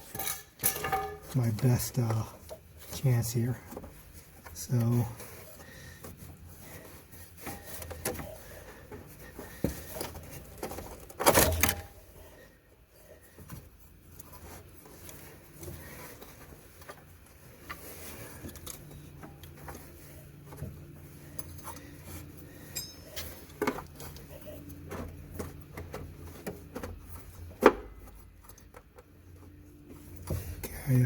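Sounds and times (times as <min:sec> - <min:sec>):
clicks and knocks of hand work: 0:00.0 - 0:02.6.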